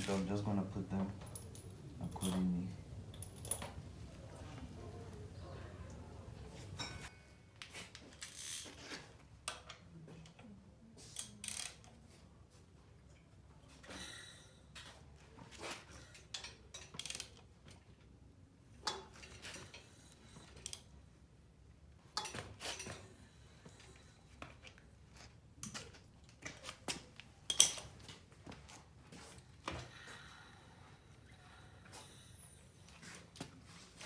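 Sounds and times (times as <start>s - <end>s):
metal parts clinking and knocking: 1.0s - 4.0s.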